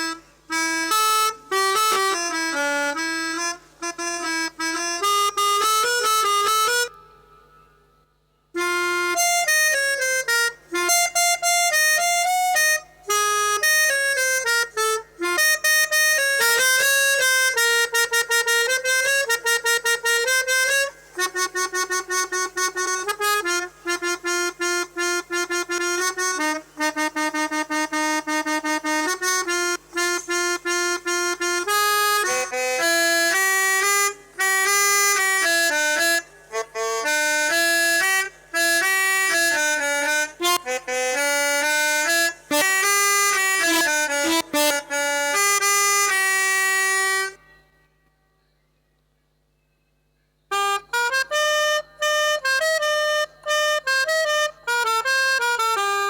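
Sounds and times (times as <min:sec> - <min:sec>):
melodica playing a tune: 0:00.0 - 0:07.9, 0:08.5 - 0:47.7, 0:50.5 - 0:56.0.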